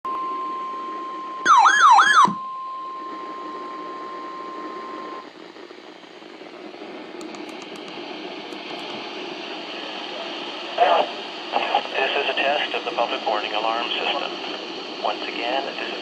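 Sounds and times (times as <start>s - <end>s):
steady high alarm tone: 0.3s - 5.2s
alert siren sweeping up and down: 1.4s - 2.5s
radio hiss: 3.0s - 16.0s.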